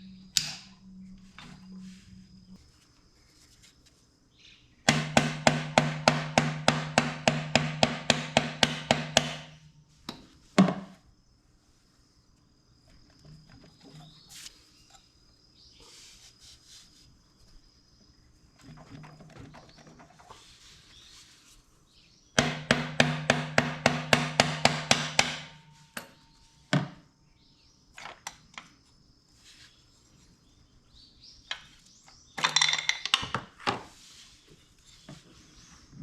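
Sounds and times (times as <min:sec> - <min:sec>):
sharp tool knocks: 0:04.9 - 0:10.8.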